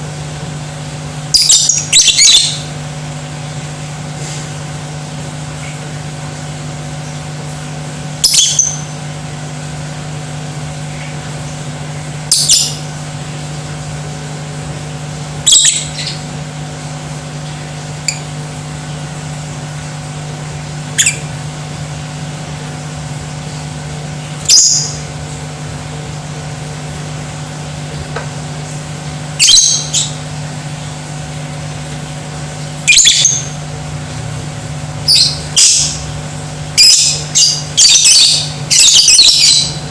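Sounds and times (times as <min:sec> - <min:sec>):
steady low hum: 0:00.0 - 0:39.9
lovebird high-pitched calls: 0:01.3 - 0:02.7, 0:08.2 - 0:09.0, 0:12.3 - 0:12.9, 0:15.4 - 0:16.3, 0:18.0 - 0:18.3, 0:20.9 - 0:21.4, 0:24.4 - 0:25.1, 0:29.4 - 0:30.2, 0:32.8 - 0:33.6, 0:35.0 - 0:36.1, 0:36.7 - 0:39.9.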